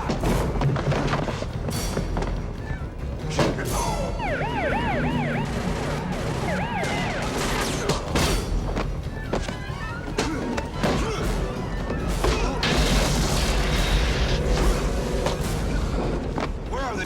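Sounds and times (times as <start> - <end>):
police siren wailing: 3.7 - 8.2, 9.0 - 12.6.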